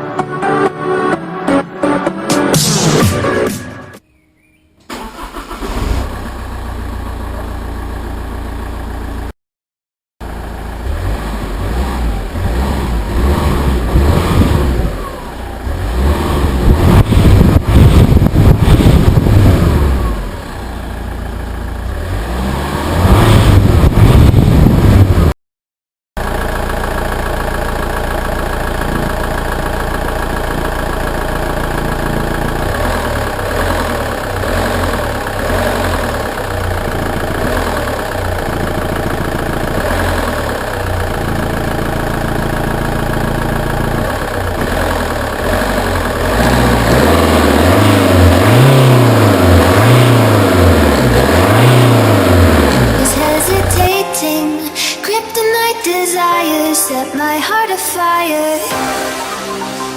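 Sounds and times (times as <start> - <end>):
diesel engine revving and idling: 4.9 - 9.4, 10.2 - 25.4, 26.2 - 53.9.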